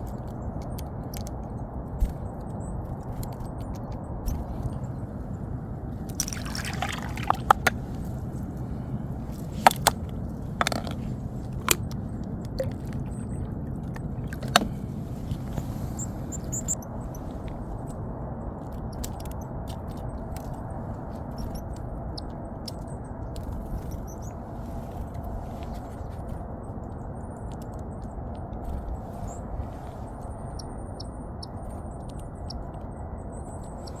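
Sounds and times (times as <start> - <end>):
steady low outdoor rush: 0.0 - 34.0
high bird chirps: 15.6 - 17.2.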